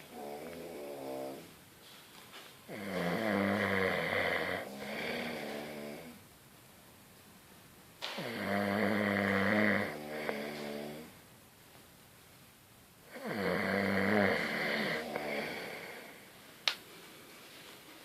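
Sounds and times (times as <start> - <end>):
long pitched snores: 0.1 - 1.5, 2.7 - 6.2, 8.2 - 11.1, 13.1 - 16.3.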